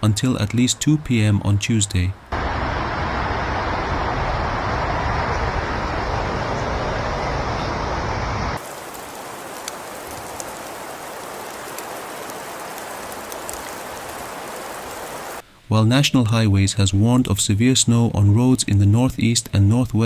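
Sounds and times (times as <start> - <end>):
rushing outdoor noise with rumble: 2.3 - 15.4
even hiss: 8.6 - 16.2.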